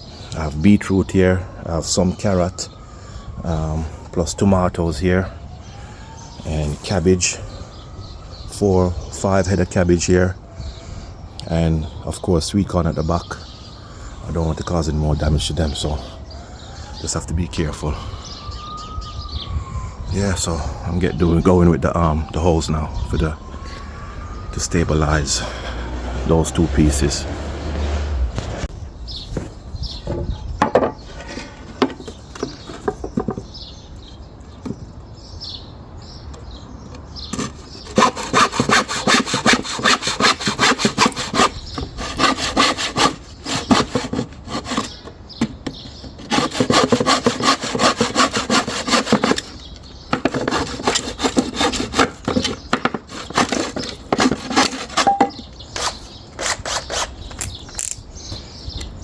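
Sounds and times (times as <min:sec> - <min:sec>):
quiet knocks: 0:29.4 - 0:31.0
hand saw cutting wood: 0:37.3 - 0:45.0, 0:46.2 - 0:58.0.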